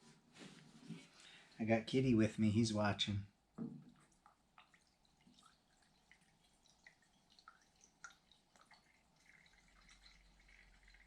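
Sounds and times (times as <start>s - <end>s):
liquid fuel dripping ticks: 4.2s - 11.0s.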